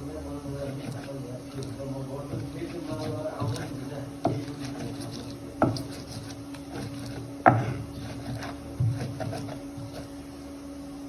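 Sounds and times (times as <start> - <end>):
sharp knocks: 7.0 - 9.4.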